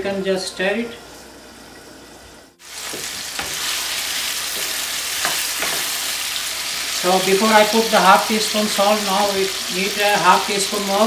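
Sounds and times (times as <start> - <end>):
vegetables sizzling in hot oil: 2.6 - 11.0.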